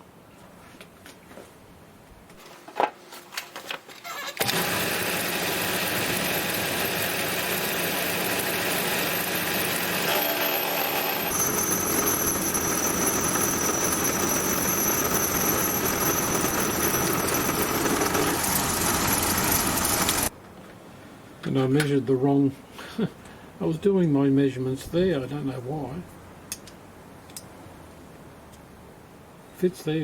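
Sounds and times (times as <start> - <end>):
milling machine whirring: 4.4 - 20.3.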